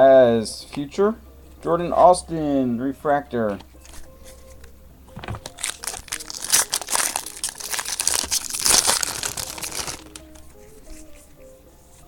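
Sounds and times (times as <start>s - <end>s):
faint background music: 0.0s - 12.0s
foil wrapper tearing and crinkling: 5.3s - 10.4s.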